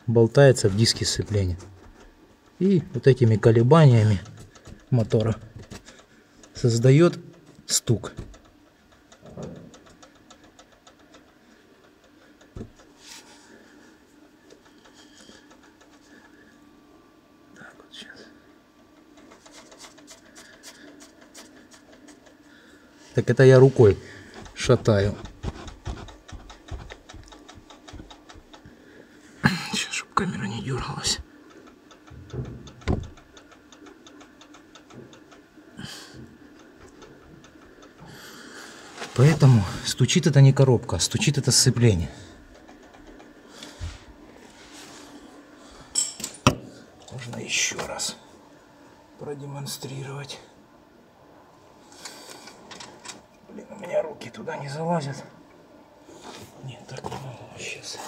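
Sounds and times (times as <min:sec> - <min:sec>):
rapid ticking rattle: 0:00.3 - 0:16.6, 0:18.0 - 0:43.8.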